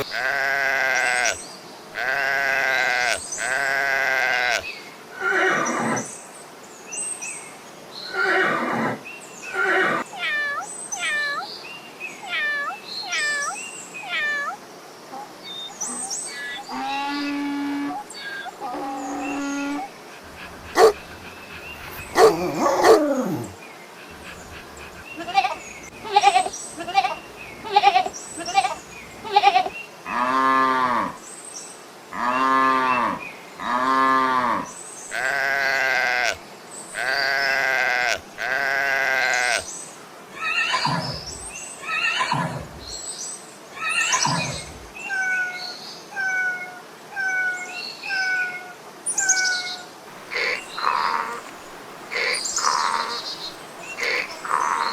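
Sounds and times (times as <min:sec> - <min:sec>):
animals bleating: 0:00.0 - 0:01.4, 0:02.0 - 0:04.6, 0:18.6 - 0:23.5, 0:24.1 - 0:31.1, 0:34.0 - 0:36.4, 0:37.0 - 0:39.6, 0:50.1 - 0:54.9
falling cries: 0:50.1 - 0:54.9.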